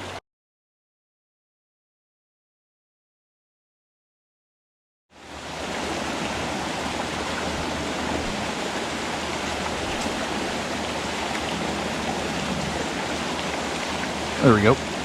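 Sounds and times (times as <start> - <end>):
creek water flowing: 5.1 - 15.0.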